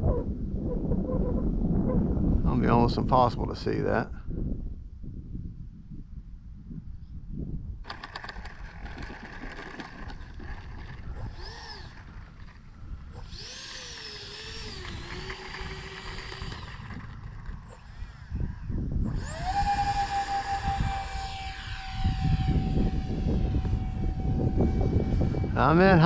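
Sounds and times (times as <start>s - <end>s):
wind buffeting microphone: 0.0s - 26.0s
electric ducted fans whining: 7.8s - 26.0s.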